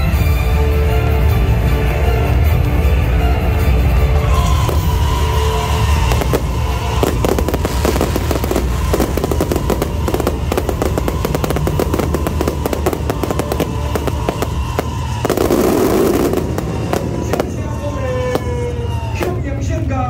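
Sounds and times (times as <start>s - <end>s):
low rumble: 0.9s - 20.0s
fireworks cracking and banging: 4.1s - 19.9s.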